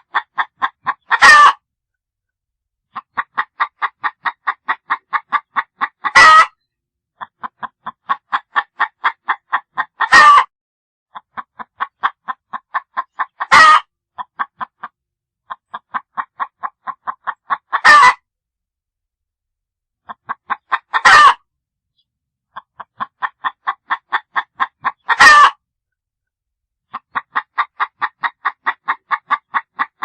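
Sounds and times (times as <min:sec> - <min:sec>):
hen clucking: 0:00.0 - 0:01.6, 0:02.9 - 0:06.6, 0:07.2 - 0:10.5, 0:11.1 - 0:18.2, 0:20.0 - 0:21.4, 0:22.5 - 0:25.6, 0:26.9 - 0:30.0.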